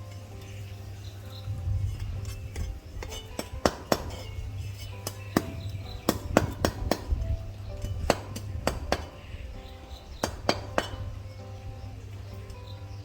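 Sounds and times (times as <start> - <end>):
background music: 0.0 - 13.0.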